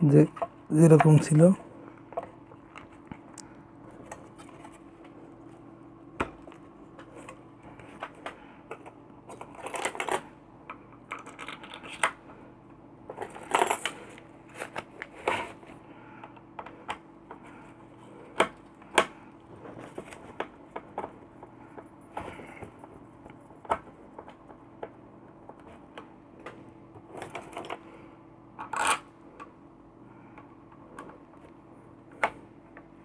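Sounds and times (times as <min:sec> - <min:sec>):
small parts clicking and tapping: 0:08.0 - 0:12.2.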